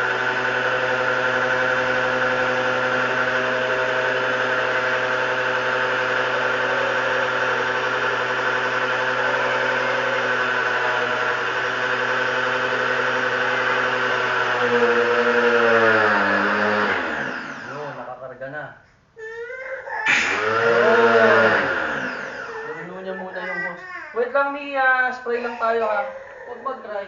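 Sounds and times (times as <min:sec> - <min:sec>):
pressure washer motor humming: 0:00.0 - 0:18.1, 0:20.1 - 0:23.3.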